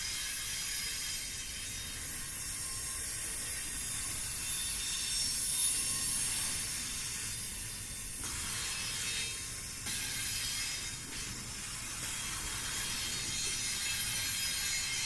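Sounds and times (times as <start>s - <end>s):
train wheels hissing on track: 0.0s - 15.0s
faint high wheel squeals: 0.3s - 12.0s.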